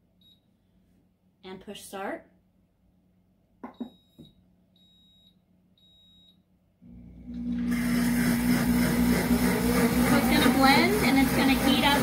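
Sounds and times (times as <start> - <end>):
blender motor blending: 6.9 - 12.0.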